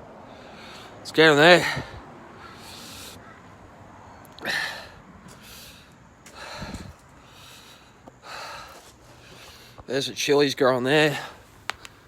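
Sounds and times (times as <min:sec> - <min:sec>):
man gasping and snorting: 0:04.3 - 0:09.8.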